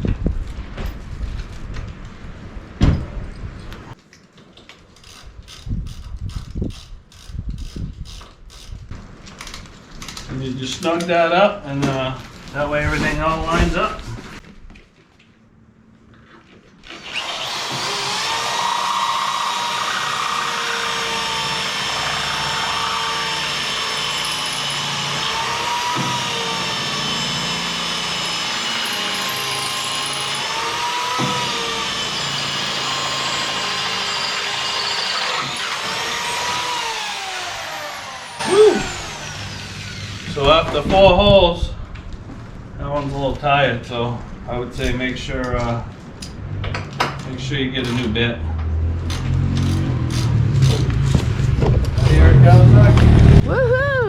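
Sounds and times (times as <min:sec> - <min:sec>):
power drill boring through steel: 0:16.9 - 0:40.6.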